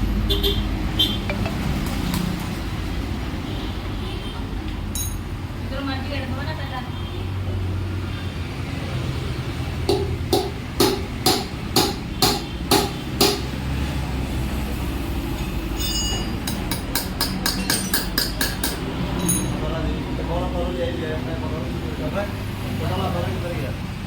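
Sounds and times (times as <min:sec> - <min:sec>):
metallic ring: 0:01.3 - 0:01.8, 0:05.0 - 0:05.3, 0:15.4 - 0:16.8, 0:19.2 - 0:19.6
hammer striking metal: 0:01.3 - 0:02.0, 0:09.9 - 0:13.6, 0:15.8 - 0:19.6.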